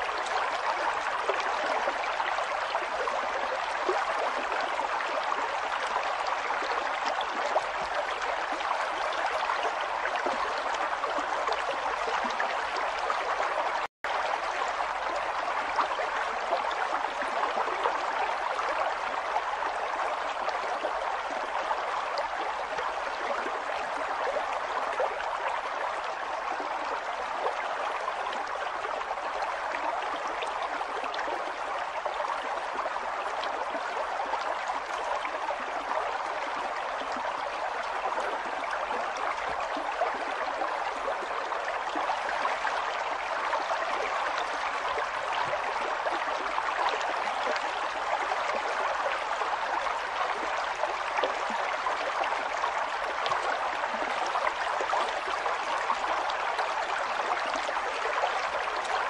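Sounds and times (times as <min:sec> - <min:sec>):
river water flowing and gurgling: 0:00.0 - 0:59.0.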